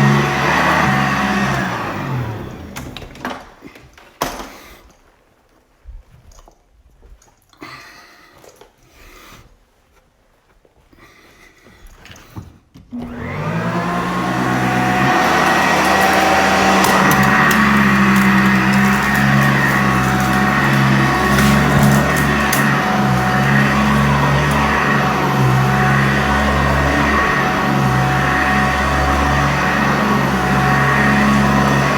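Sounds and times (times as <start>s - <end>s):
vacuum cleaner motor running: 0.0s - 3.2s, 12.9s - 31.9s.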